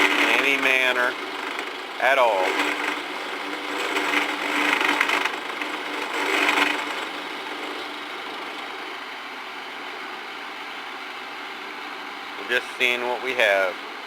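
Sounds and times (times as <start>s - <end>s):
end mill cutting metal: 0.0s - 9.2s
motor humming: 0.0s - 14.0s.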